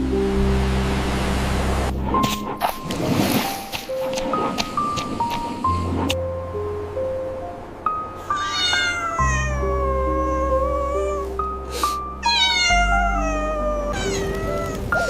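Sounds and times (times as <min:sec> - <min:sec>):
background music low notes: 0:00.0 - 0:15.0
cat meowing: 0:08.2 - 0:11.4, 0:12.2 - 0:15.0.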